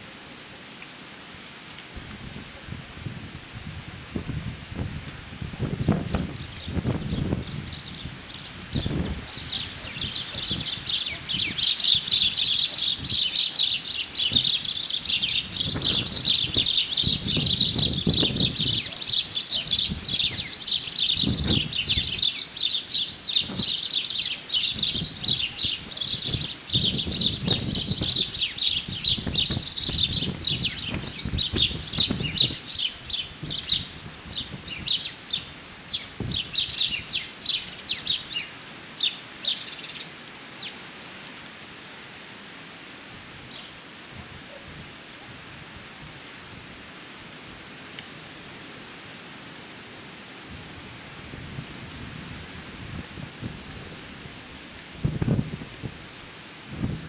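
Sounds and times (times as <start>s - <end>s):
small birds chirping: 5.8s - 40.9s.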